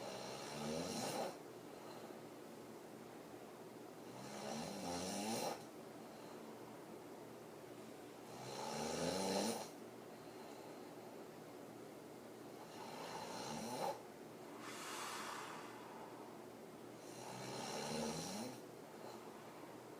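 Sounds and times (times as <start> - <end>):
woman snoring: 0.0 - 1.4, 4.1 - 5.6, 8.3 - 9.8, 12.6 - 14.0, 17.0 - 18.6.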